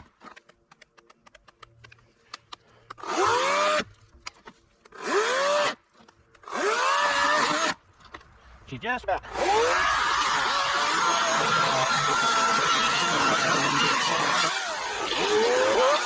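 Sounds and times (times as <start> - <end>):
electric chainsaw cutting log: 2.9 - 4.0, 4.8 - 7.8, 9.3 - 16.0.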